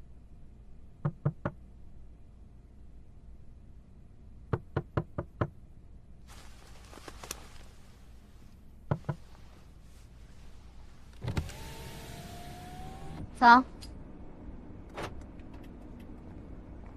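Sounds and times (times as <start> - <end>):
knuckles knocking on car window: 1.0 - 1.6, 4.5 - 5.5, 8.9 - 9.2.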